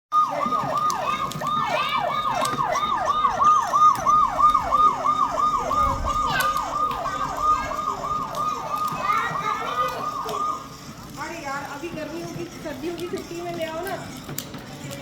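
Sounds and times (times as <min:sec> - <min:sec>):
electronic police siren wailing: 0:00.1 - 0:10.8.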